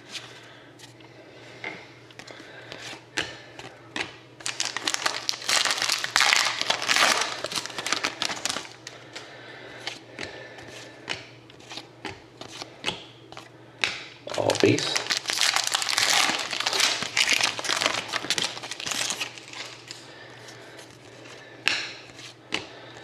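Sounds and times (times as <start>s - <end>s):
wrapper tearing and crinkling: 4.4s - 8.9s, 14.3s - 20.0s.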